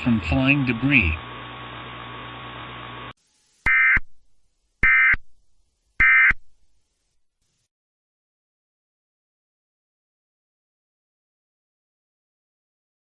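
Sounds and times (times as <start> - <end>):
steady hum: 0.0 - 7.6.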